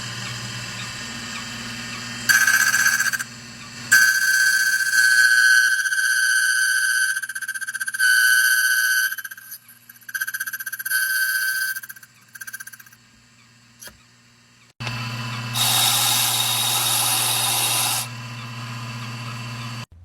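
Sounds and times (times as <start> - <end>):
key cutter grinding: 14.8 - 19.8
key cutter whining: 14.8 - 19.9
machine motor humming: 14.8 - 19.9.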